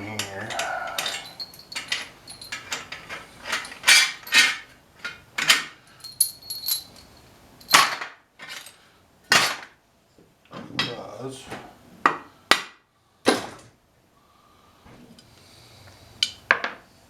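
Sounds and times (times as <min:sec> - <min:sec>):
metal tools clinking: 0:00.0 - 0:08.8.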